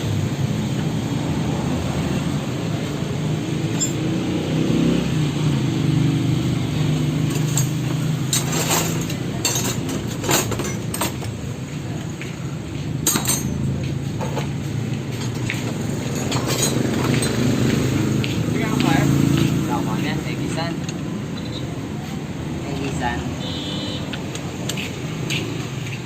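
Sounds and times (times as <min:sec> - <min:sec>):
metallic clinks and knocks: 0:03.6 - 0:04.1, 0:07.3 - 0:11.5, 0:13.0 - 0:14.6, 0:15.2 - 0:17.5.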